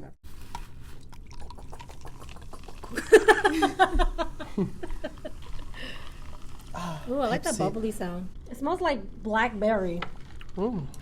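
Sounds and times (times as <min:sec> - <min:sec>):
carbonated drink fizzing: 0:00.4 - 0:07.9
sparkling drink pouring into glass: 0:01.2 - 0:07.8.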